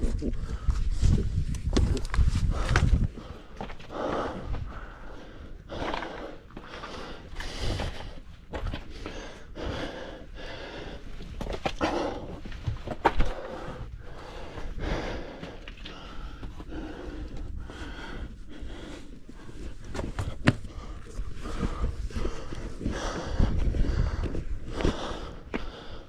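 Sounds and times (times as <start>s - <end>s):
person breathing hard: 0.2s - 26.0s
footsteps on rocky trail: 0.5s - 26.0s.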